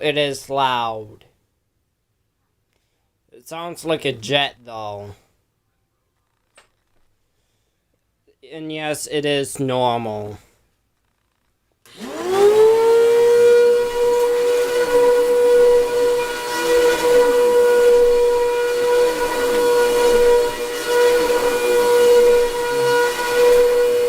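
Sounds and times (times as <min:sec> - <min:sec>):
vacuum cleaner running: 0:11.9 - 0:24.0.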